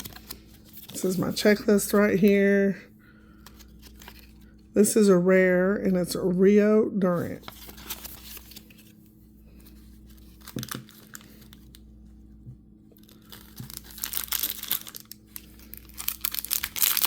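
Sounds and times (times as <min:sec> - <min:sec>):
plastic bag tearing and crinkling: 0:10.2 - 0:11.8, 0:13.0 - 0:17.0.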